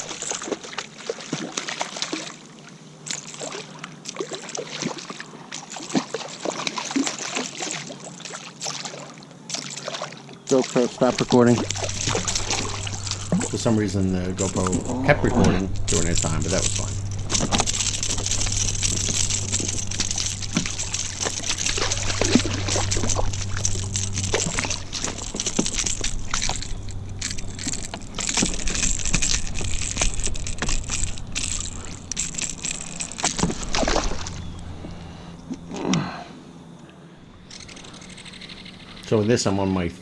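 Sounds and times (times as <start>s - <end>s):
water sloshing around kayak: 0.0s - 35.7s.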